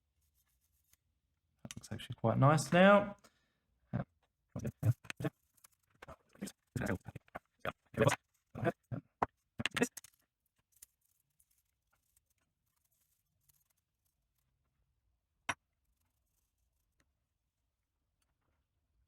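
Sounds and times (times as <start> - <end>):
faint rustling of small parts: 4.2 - 15.0, 15.7 - 18.6.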